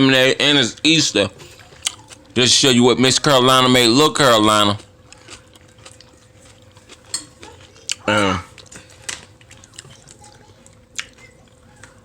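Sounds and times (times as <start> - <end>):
utensils clinking against dishes: 5.1 - 12.0.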